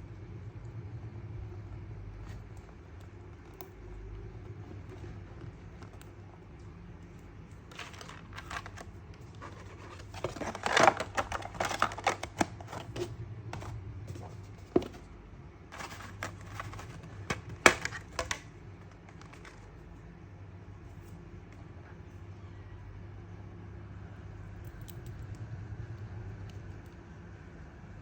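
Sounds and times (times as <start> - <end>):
packaging being opened: 7.5 - 15.1, 15.7 - 19.8.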